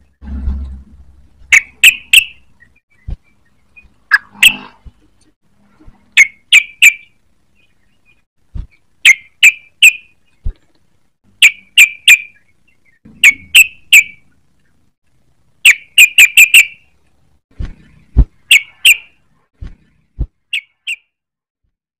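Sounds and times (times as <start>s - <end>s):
bulbul chirping: 1.5s - 4.7s, 6.2s - 10.5s, 11.4s - 14.8s, 15.6s - 16.9s, 18.4s - 19.2s, 20.5s - 21.2s
low thumps: 17.5s - 18.5s.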